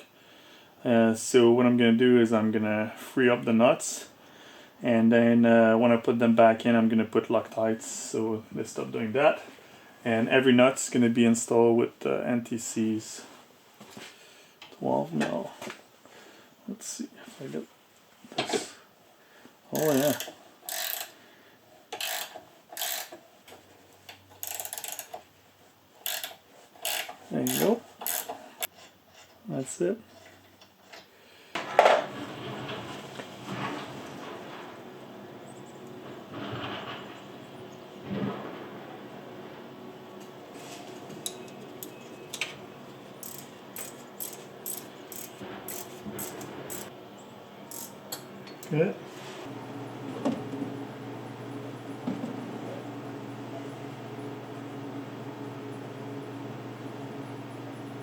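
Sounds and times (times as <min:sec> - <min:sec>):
ratchet wrench clicking: 0:19.8 - 0:21.1, 0:21.9 - 0:23.2, 0:24.4 - 0:25.2, 0:26.0 - 0:28.4, 0:43.2 - 0:46.9, 0:47.7 - 0:48.0.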